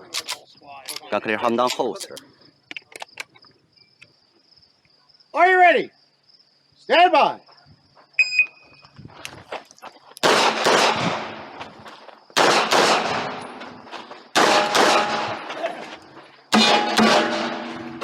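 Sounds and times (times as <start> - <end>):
shot timer beep: 8.2 - 8.6
handgun shots with echo: 10.2 - 11.4, 12.4 - 13.6, 14.4 - 15.4, 16.5 - 18.0.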